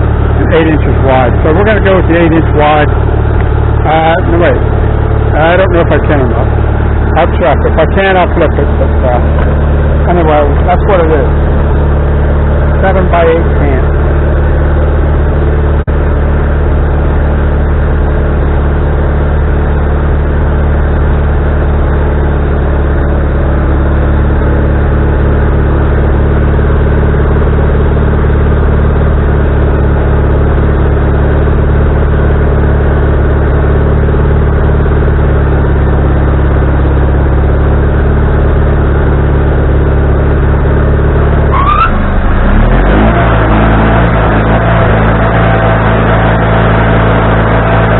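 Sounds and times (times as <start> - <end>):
sawmill engine drone: 0.0 - 47.9.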